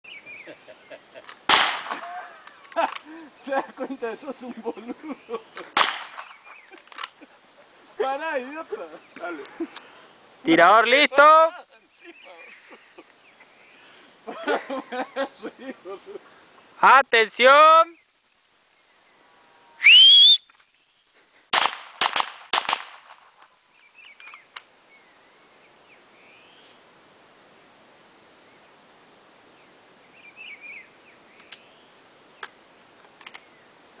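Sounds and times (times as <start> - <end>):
pistol shots: 1.5 - 2.0, 5.8 - 6.4, 21.5 - 23.2.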